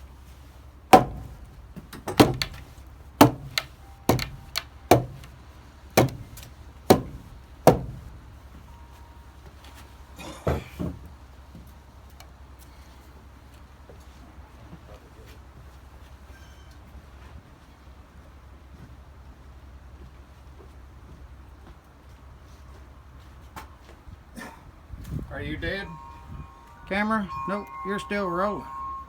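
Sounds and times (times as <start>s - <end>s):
hammering on wood: 1.0s - 5.4s, 6.0s - 8.2s.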